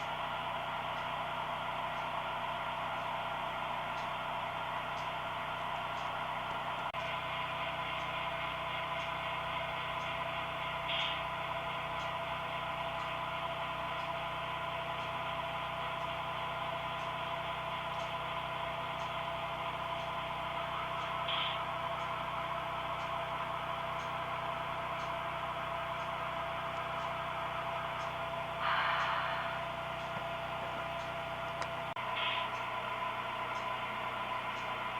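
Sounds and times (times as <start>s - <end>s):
model train motor hum: 0.0s - 34.9s.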